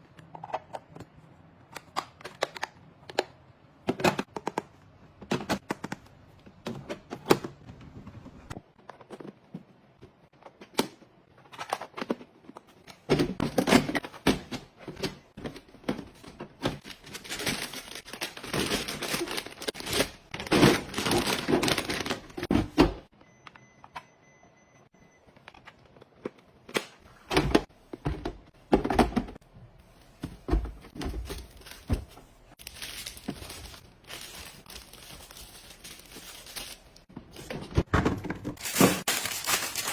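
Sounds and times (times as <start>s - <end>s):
plastic packaging crinkling: 16.8s - 22.4s, 32.5s - 37.1s, 38.6s - 39.9s.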